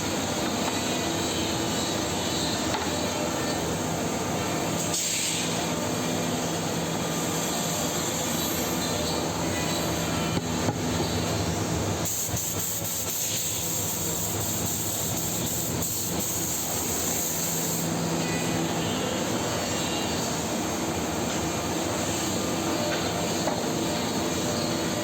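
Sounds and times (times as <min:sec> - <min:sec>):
cnc router hum: 0:00.0 - 0:04.8, 0:05.7 - 0:12.1.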